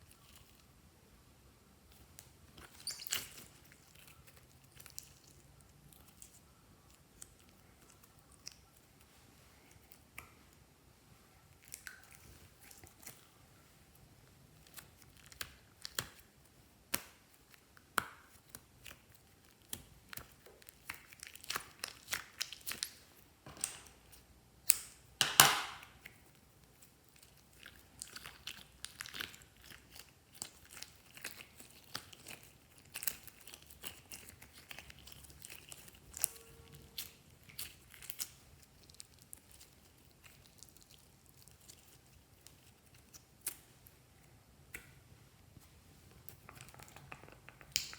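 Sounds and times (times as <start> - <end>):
slime squishing and popping: 14.6 - 23.0, 27.1 - 43.6, 46.2 - 47.9.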